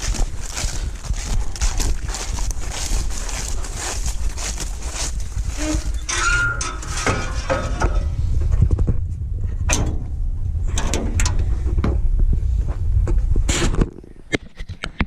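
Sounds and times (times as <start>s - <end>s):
steady low rumble: 0.0s - 14.3s
clunks and knocks of a roll: 9.6s - 12.1s.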